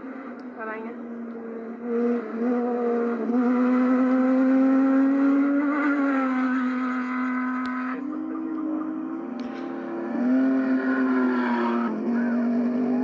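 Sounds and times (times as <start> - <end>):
race truck engine revving: 0.0 - 13.0.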